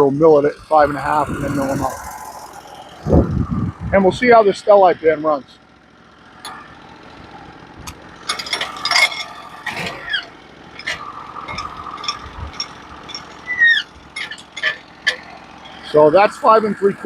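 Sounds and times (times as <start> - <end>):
mechanical clicking and rattling: 6.2 - 16.1.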